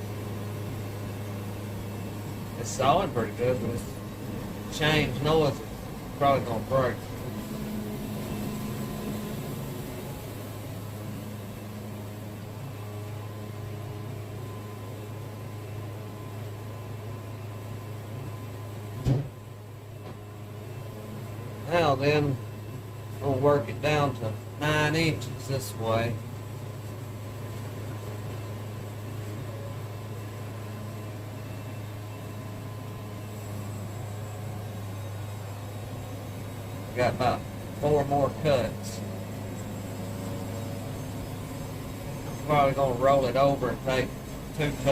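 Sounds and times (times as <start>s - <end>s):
band sawmill humming: 0.0s - 44.9s
band sawmill sawing log: 2.4s - 12.1s, 36.4s - 44.9s.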